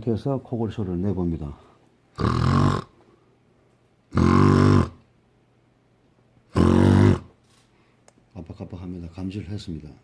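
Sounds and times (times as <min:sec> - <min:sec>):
man imitating snoring: 0:02.2 - 0:02.9, 0:04.1 - 0:05.0, 0:06.5 - 0:07.3.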